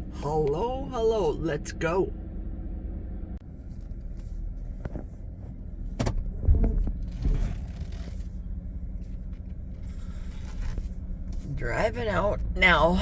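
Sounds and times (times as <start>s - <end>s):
engine low rumble: 0.0s - 13.0s.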